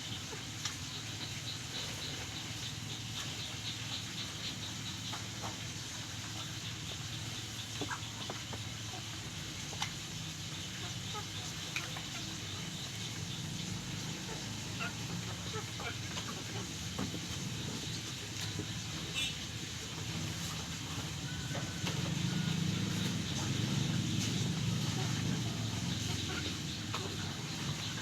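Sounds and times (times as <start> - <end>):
chickens chirping: 10.7 - 28.0.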